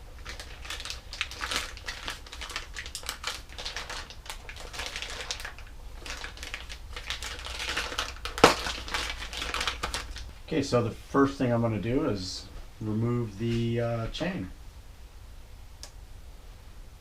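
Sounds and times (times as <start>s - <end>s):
handling clicking and crinkling: 0.1s - 10.3s.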